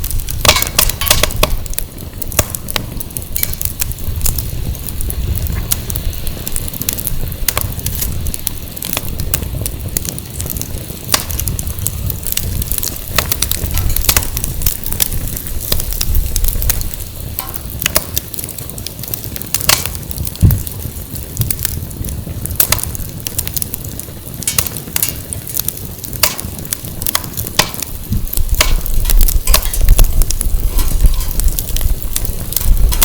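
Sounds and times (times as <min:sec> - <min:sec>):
firewood crackling and popping: 0:00.0 - 0:33.0
wind rumble on microphone: 0:00.0 - 0:33.0
low thump: 0:20.4 - 0:20.6.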